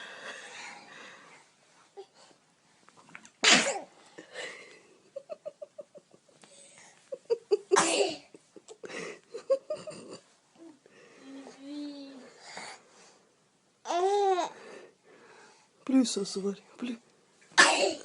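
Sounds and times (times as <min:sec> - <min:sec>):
children sneezing: 0:03.4 - 0:03.9, 0:07.8 - 0:08.2.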